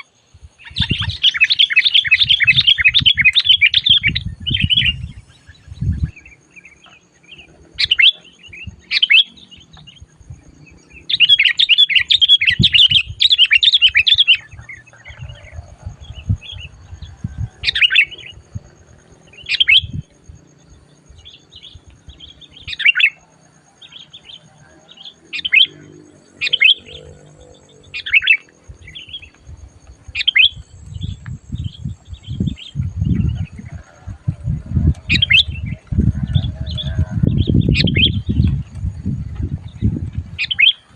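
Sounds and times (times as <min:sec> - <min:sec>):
bird chattering calls: 0:00.0 - 0:09.8, 0:11.0 - 0:16.7, 0:17.4 - 0:20.0, 0:21.2 - 0:23.2, 0:23.9 - 0:29.3, 0:40.3 - 0:40.9
bird chirping: 0:00.0 - 0:40.9.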